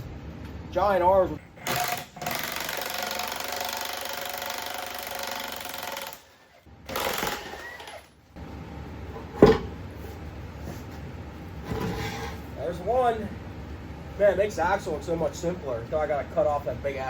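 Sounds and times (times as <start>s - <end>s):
impact wrench hammering: 1.6s - 6.2s.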